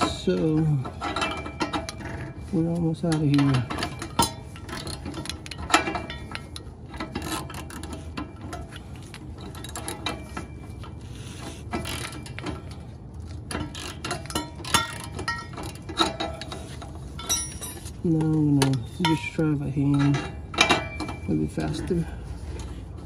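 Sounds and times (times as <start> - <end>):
ratchet wrench clicking: 13.5 - 16.5.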